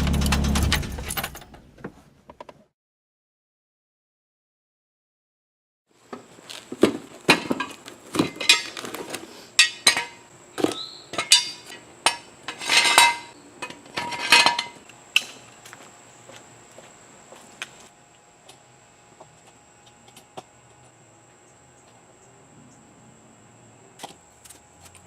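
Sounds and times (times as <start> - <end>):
hand tools clanking on metal: 7.3 - 15.4.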